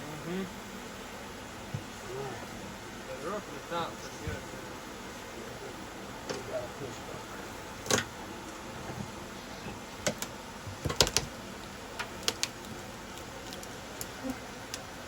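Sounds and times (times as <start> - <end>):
tools and boards clicking and knocking: 10.1 - 11.3.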